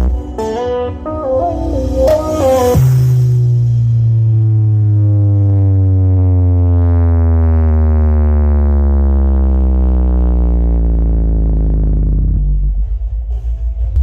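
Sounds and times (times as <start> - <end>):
low synthesizer tone gliding down: 0.0 - 13.3.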